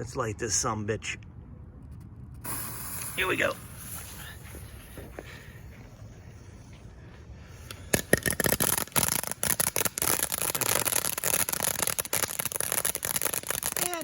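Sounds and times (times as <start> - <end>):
firework hissing: 2.4 - 6.8, 7.5 - 14.0
rapid crackling pops: 7.6 - 14.0.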